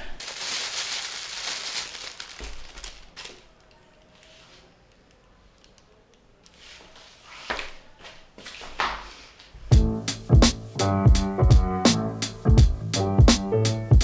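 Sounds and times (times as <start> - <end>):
material crinkling and rustling: 0.0 - 5.8.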